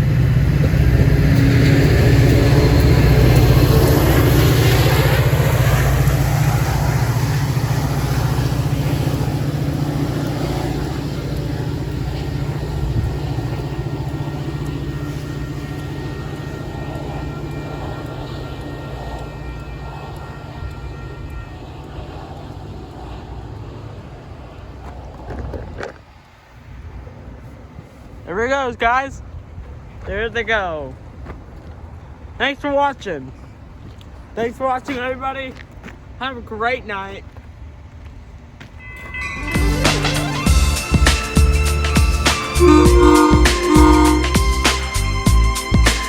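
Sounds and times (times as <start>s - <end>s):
faint train horn chord: 0.0s - 23.8s, 38.8s - 46.0s
wind on microphone: 0.0s - 28.2s
diesel locomotive engine rumbling: 0.0s - 46.0s.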